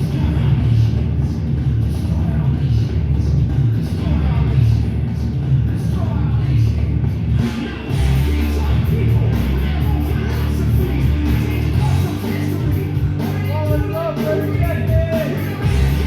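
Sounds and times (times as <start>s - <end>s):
music with heavy bass: 0.0s - 16.0s
person singing: 7.4s - 16.0s.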